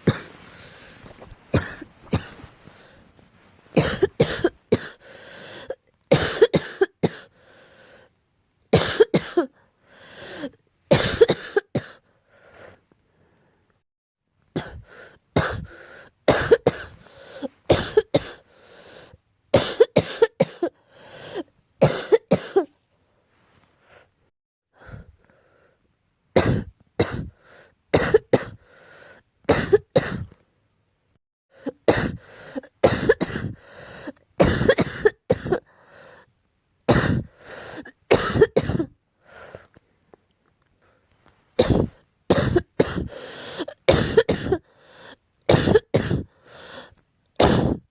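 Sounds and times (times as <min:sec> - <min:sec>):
person coughing harshly: 0:00.0 - 0:02.6, 0:03.8 - 0:07.3, 0:08.7 - 0:09.6, 0:10.4 - 0:12.0, 0:14.6 - 0:18.4, 0:19.6 - 0:22.7, 0:26.4 - 0:27.4, 0:28.0 - 0:28.6, 0:29.5 - 0:30.3, 0:31.7 - 0:33.6, 0:34.4 - 0:35.7, 0:36.9 - 0:38.9, 0:41.6 - 0:44.7, 0:45.5 - 0:46.4, 0:47.4 - 0:47.9.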